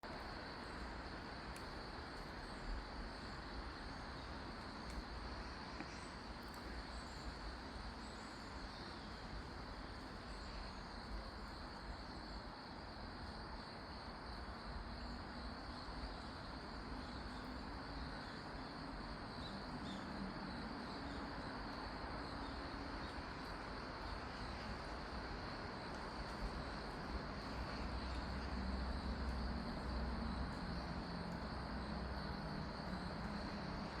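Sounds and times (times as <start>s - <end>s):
insects trilling: 0.1s - 34.0s.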